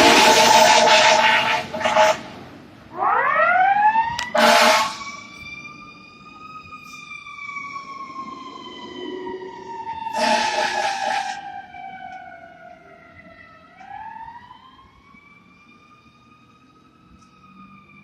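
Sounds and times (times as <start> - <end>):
fire truck siren winding: 0.0 - 2.3, 3.0 - 18.0
short loud horn blasts: 0.0 - 2.3, 4.4 - 5.1, 10.1 - 11.4.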